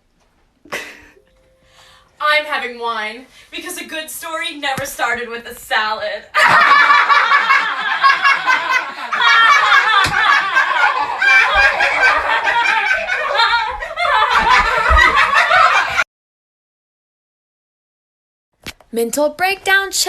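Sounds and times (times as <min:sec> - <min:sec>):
person laughing hard: 0:06.4 - 0:16.0.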